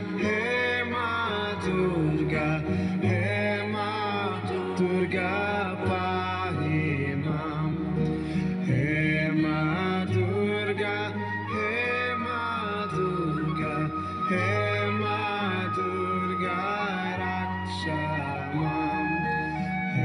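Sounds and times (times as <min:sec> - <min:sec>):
person singing a drawn-out melody: 0:00.0 - 0:20.0.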